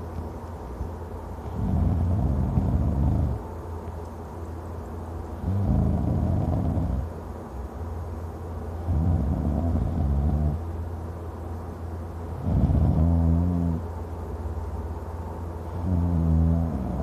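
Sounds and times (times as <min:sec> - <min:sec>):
quiet breathing: 0:01.3 - 0:03.6
man snoring loudly: 0:01.6 - 0:03.4, 0:05.4 - 0:07.1, 0:08.9 - 0:10.6, 0:12.4 - 0:13.8, 0:15.8 - 0:17.0.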